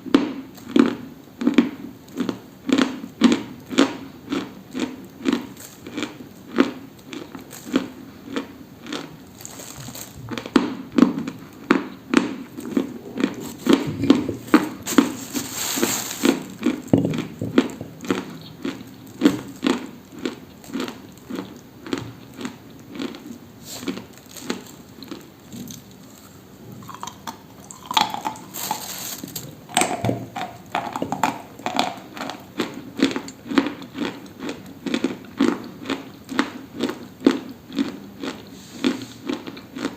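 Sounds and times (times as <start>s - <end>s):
dry brittle material crunching: 8.9s - 10.6s, 12.5s - 21.6s, 22.4s - 29.6s.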